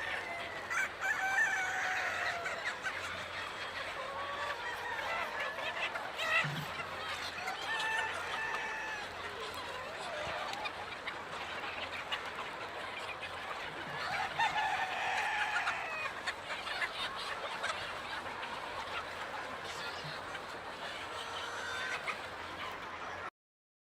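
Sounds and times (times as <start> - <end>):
loud long chicken call: 0.0 - 10.7, 13.7 - 18.3, 21.1 - 22.2
chickens clucking: 0.0 - 23.3.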